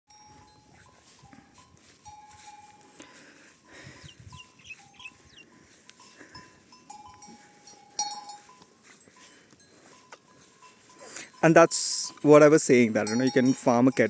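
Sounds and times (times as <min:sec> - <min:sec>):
cow bells ringing: 0:00.1 - 0:14.0
faint cattle calls: 0:02.8 - 0:06.4.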